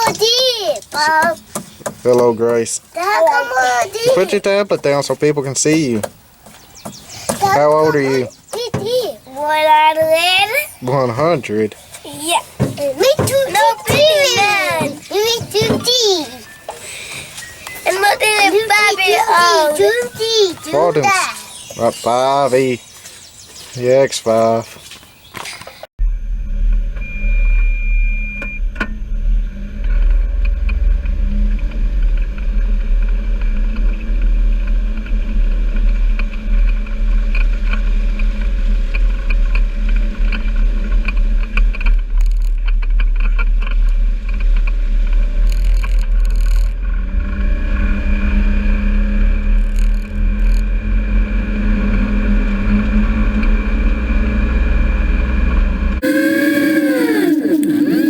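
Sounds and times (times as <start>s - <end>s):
vehicle engine low rumble: 26.0s - 56.1s.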